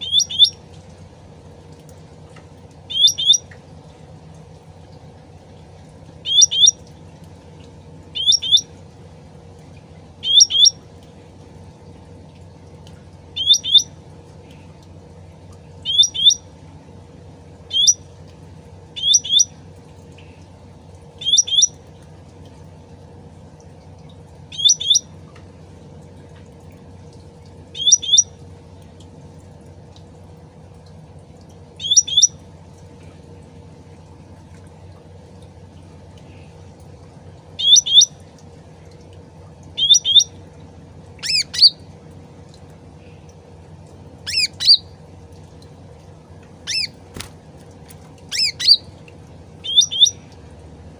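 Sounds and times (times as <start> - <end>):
bird double chirps: 0.0 - 0.6, 2.9 - 3.5, 6.2 - 6.8, 8.2 - 8.7, 10.2 - 10.8, 13.4 - 13.9, 15.8 - 16.4, 17.7 - 18.0, 19.0 - 19.5, 21.2 - 21.8, 24.5 - 25.1, 27.8 - 28.3, 31.8 - 32.3, 37.6 - 38.1, 39.8 - 40.3, 41.2 - 41.8, 44.3 - 44.9, 46.7 - 47.0, 48.3 - 48.9, 49.6 - 50.2
running water trickling: 0.0 - 50.9.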